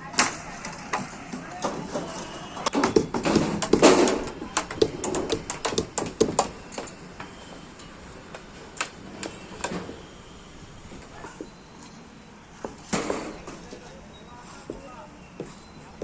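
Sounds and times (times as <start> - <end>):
sharp knocks and clicks: 2.6 - 7.0.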